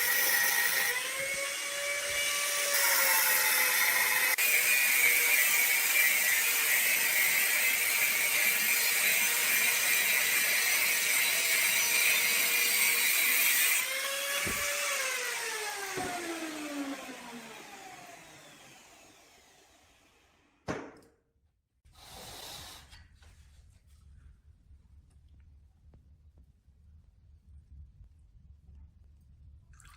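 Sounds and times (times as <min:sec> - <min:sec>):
power tool whining and spinning down: 0:00.0 - 0:20.6.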